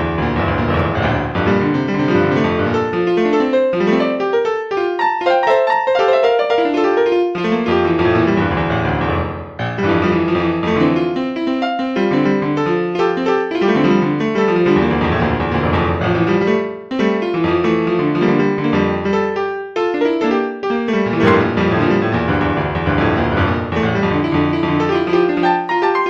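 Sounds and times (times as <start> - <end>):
piano music: 0.0 - 12.7, 13.8 - 16.6, 20.9 - 26.0.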